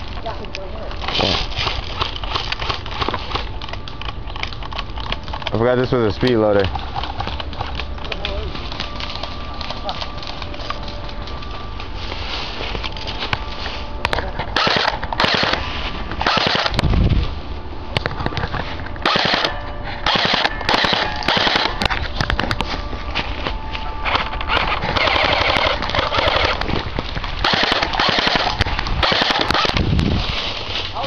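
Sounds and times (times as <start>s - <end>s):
airsoft gun full-auto bursts: 14.6s - 15.6s, 16.2s - 16.8s, 19.0s - 21.8s, 24.6s - 26.6s, 27.4s - 29.8s.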